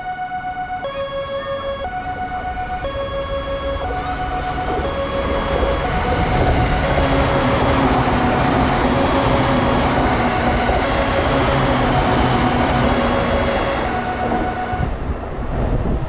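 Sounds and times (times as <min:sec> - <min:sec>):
held electronic tones: 0:00.0 - 0:14.9
high-speed train passing: 0:01.2 - 0:16.0.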